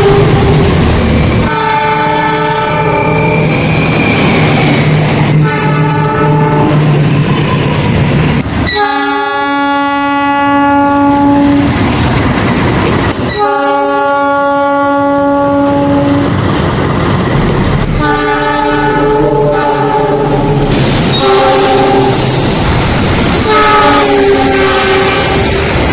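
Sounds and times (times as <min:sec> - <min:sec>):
locomotive horn blasts: 0:01.5 - 0:03.2, 0:05.4 - 0:06.8, 0:08.7 - 0:11.7, 0:13.4 - 0:16.3, 0:18.0 - 0:20.5, 0:21.2 - 0:22.2, 0:23.4 - 0:25.4
train wheels clattering on rails: 0:11.1 - 0:13.7, 0:15.5 - 0:25.9.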